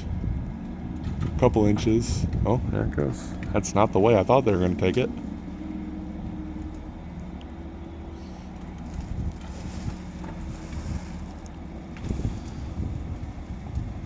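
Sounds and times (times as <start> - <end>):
wind on microphone: 0.0 - 3.6, 8.8 - 14.0
crane engine droning: 0.0 - 14.0.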